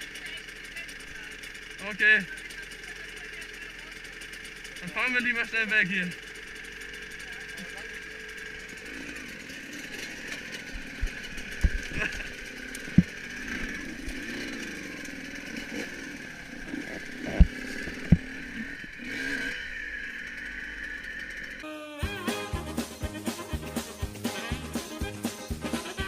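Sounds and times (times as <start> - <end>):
motorcycle engine running: 0.0 - 26.0
sharp thumps: 9.9 - 20.0.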